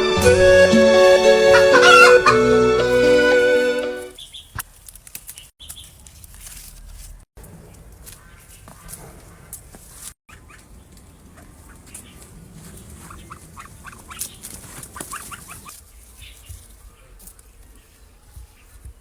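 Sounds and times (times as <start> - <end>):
chickens clucking: 0.9 - 3.8, 10.3 - 15.8.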